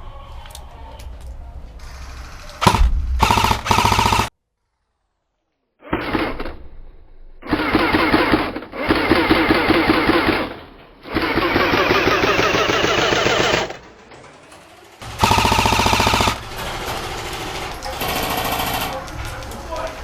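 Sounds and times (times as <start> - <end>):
airsoft gun full-auto bursts: 2.6 - 4.3, 5.8 - 6.6, 7.4 - 13.8, 15.0 - 19.1.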